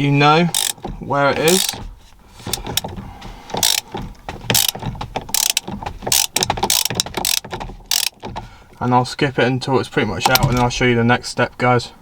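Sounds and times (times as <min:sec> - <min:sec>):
ratchet wrench clicking: 0:00.5 - 0:00.9, 0:01.5 - 0:01.8, 0:03.6 - 0:03.9, 0:04.5 - 0:08.3.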